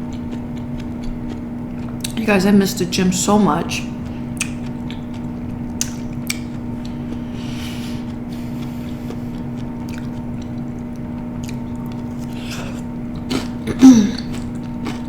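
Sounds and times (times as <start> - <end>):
chewing food: 0.0 - 2.2, 3.8 - 15.0
steady low hum: 0.0 - 15.0
lip smacking: 4.3 - 15.0.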